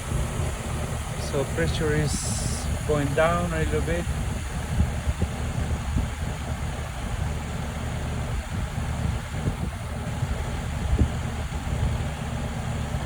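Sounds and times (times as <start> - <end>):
air conditioning compressor hum: 0.0 - 13.0.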